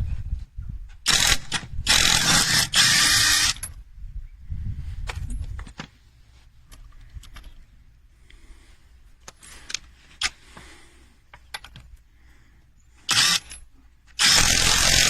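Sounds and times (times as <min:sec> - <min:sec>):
impact wrench bursts: 0:01.1 - 0:03.7, 0:13.0 - 0:15.0.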